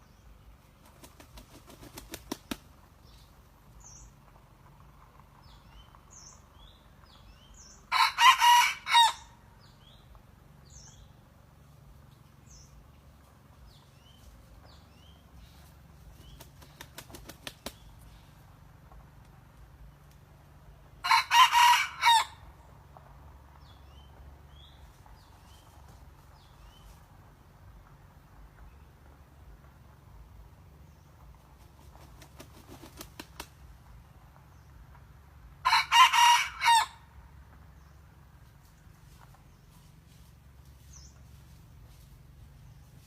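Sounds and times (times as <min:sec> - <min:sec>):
rooster wings flapping: 0:00.8 - 0:02.8, 0:16.0 - 0:18.0, 0:31.6 - 0:33.6
rooster crowing: 0:07.9 - 0:09.4, 0:21.0 - 0:22.4, 0:35.6 - 0:37.0.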